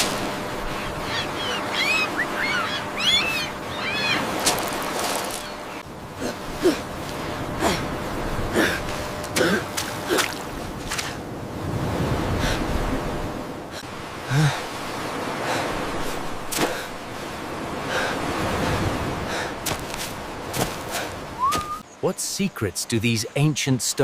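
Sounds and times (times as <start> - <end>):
surf washing: 0.0 - 24.0
person gasping and breathing: 8.5 - 10.3, 13.8 - 14.7.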